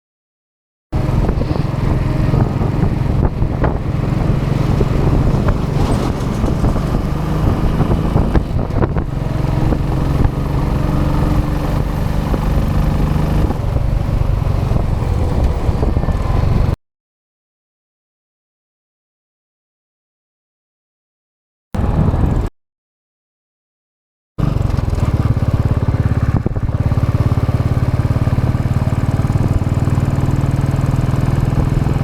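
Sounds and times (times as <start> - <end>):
motorcycle engine running: 1.0 - 16.8, 21.8 - 22.5, 24.4 - 32.0
wind and road noise: 1.0 - 16.8, 21.8 - 22.5, 24.4 - 32.0.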